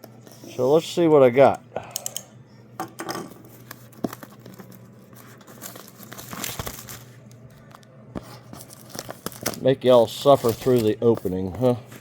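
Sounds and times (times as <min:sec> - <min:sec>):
packaging crinkling and tearing: 0:03.6 - 0:11.5.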